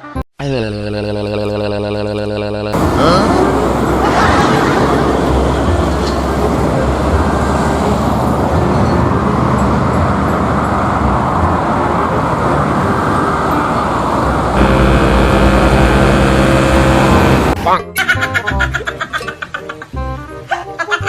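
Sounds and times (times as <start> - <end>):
heavy vehicle engine hum: 2.7 - 17.6
vehicles passing: 2.8 - 17.8.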